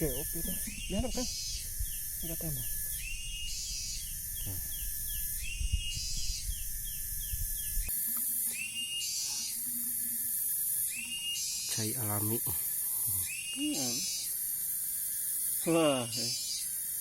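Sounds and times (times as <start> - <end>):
high buzzing: 0.0 - 8.7.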